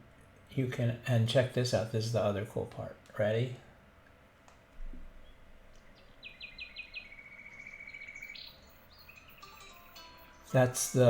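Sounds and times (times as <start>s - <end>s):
alarm clock birdsong recording: 5.9s - 11.0s.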